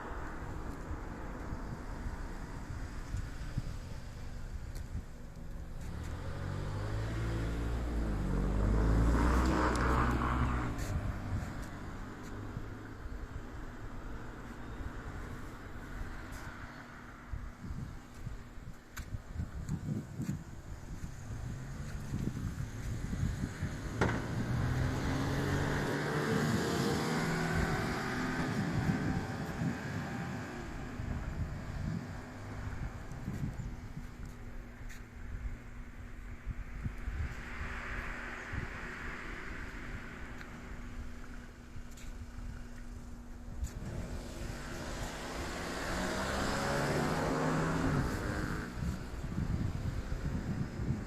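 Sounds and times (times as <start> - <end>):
motor vehicle passing by: 5.8 - 13.2, 19.8 - 35.0, 36.8 - 51.0.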